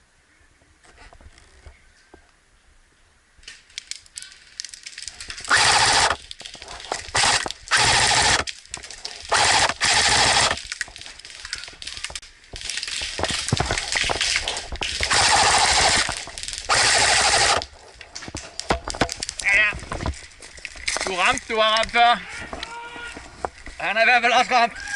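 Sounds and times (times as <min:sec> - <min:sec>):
airsoft guns firing bursts: 0:05.5 - 0:06.2, 0:07.2 - 0:08.5, 0:09.3 - 0:10.6, 0:15.1 - 0:16.1, 0:16.7 - 0:17.6.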